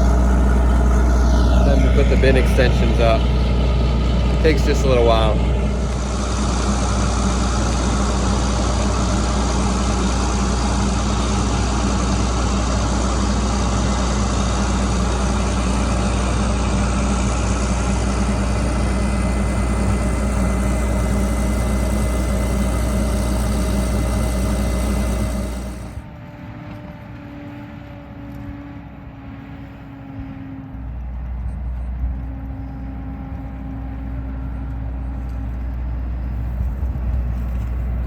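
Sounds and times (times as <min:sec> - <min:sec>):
diesel engine idling: 0:00.0 - 0:26.0.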